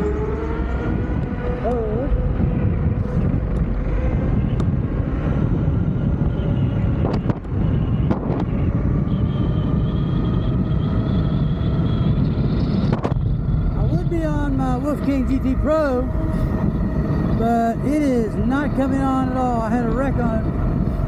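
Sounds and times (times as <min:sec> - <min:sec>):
wind rushing over microphone: 0:00.0 - 0:21.0.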